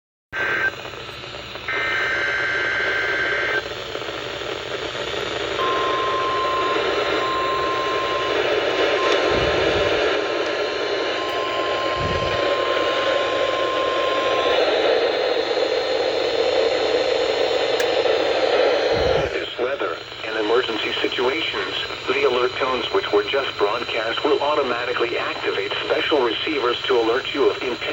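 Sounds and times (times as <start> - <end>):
radio static hiss: 0.4 - 27.9
warbling digital header tones: 11.1 - 14.4
dull low thumps: 12.0 - 12.4.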